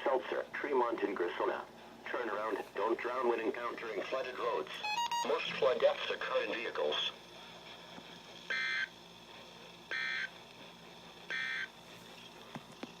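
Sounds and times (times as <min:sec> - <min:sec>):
buzzy data burst tones: 0:08.4 - 0:09.0, 0:09.9 - 0:10.3, 0:11.3 - 0:11.7.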